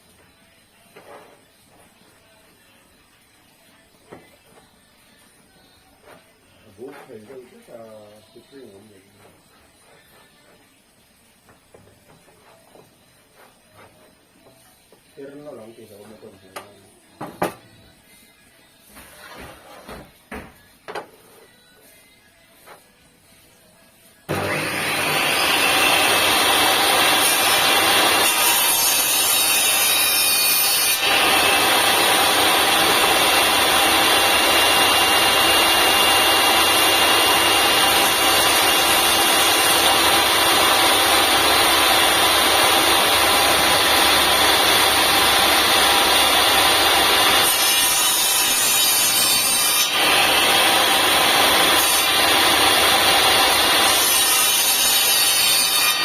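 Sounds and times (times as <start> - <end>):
table saw cutting wood: 24.3 - 56.0.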